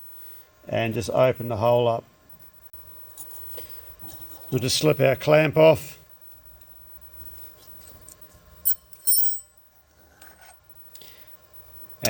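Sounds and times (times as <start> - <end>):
faint steady hum: 0.0 - 12.0
ringing metallic clink: 8.7 - 9.5.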